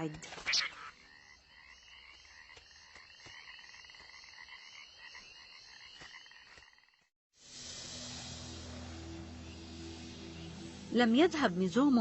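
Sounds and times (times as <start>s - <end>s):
frogs trilling: 0.4s - 7.1s.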